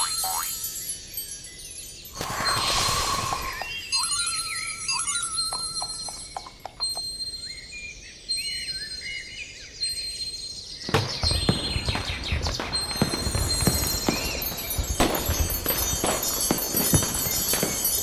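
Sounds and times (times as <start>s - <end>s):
warbling bird-like chirps: 2.1s - 10.2s
rapid clatter of sharp knocks: 10.9s - 18.0s
high sparkly tones: 11.0s - 18.0s.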